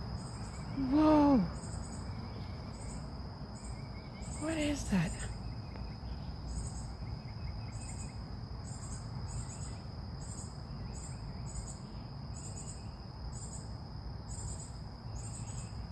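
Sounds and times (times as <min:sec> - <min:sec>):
crickets chirping: 0:00.0 - 0:15.9
high-pitched insect whine: 0:00.0 - 0:15.9.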